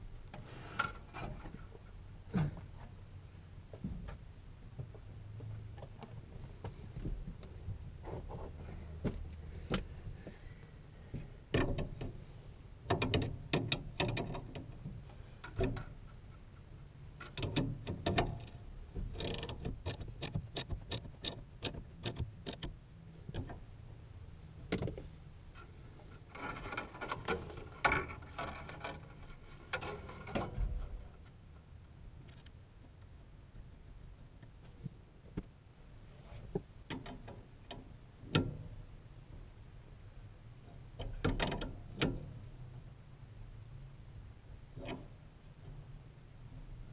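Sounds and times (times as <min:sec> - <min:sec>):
tools clicking and rattling: 0:17.2 - 0:22.8.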